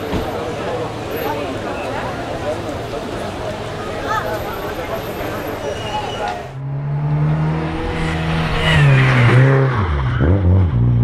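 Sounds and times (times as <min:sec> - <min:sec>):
race car engine revving: 0:06.5 - 0:11.0.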